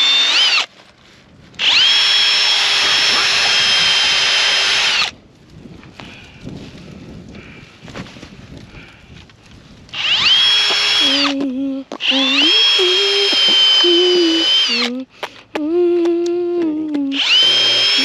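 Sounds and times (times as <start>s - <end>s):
power drill driving screws into wood: 0.0s - 0.7s, 1.6s - 5.1s, 10.0s - 11.4s, 12.0s - 14.9s, 17.1s - 18.0s.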